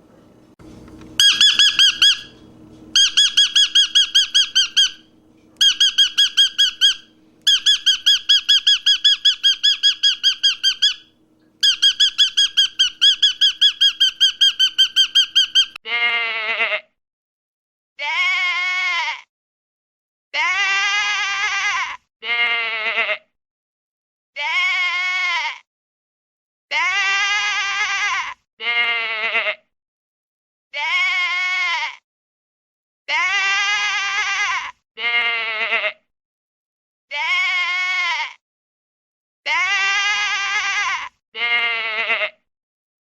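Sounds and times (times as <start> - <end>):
animal squeaking calls: 1.2 - 15.8
sheep bleating: 15.9 - 16.9, 18.0 - 19.2, 20.4 - 23.2, 24.4 - 25.6, 26.7 - 29.6, 30.8 - 32.0, 33.1 - 36.0, 37.1 - 38.4, 39.5 - 42.4.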